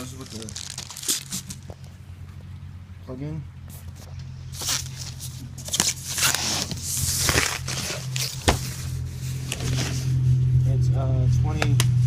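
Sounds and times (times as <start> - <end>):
packaging rustling and crinkling: 0.0 - 1.8, 4.5 - 10.2.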